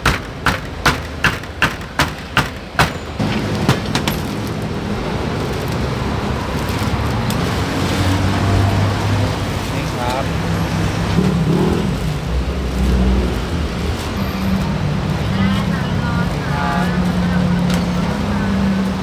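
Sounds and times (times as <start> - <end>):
sharp knocks: 0.0 - 4.4
road traffic: 0.0 - 19.0
vehicle engine humming: 0.0 - 19.0.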